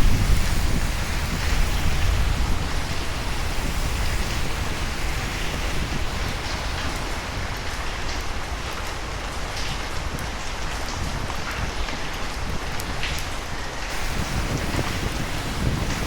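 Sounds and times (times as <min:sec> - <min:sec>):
steady rain: 0:00.0 - 0:16.0
low thunder rumble: 0:13.9 - 0:16.0.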